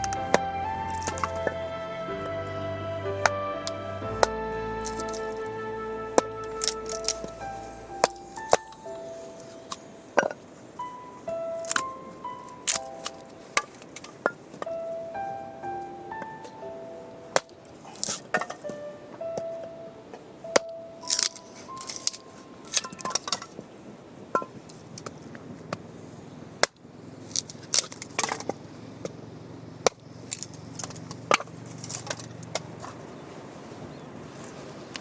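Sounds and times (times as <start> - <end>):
soft piano music: 0.0 - 23.7.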